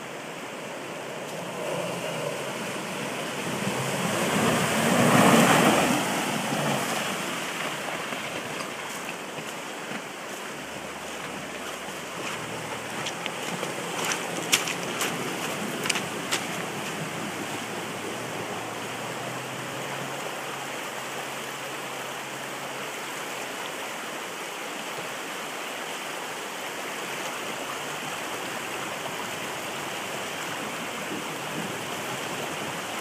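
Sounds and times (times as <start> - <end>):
river rushing: 0.0 - 33.0.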